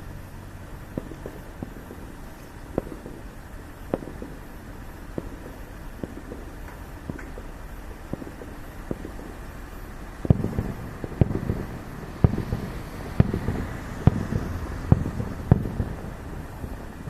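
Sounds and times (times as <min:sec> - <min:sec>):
fireworks bangs: 0:00.8 - 0:17.0
rumbling echo: 0:05.1 - 0:17.0.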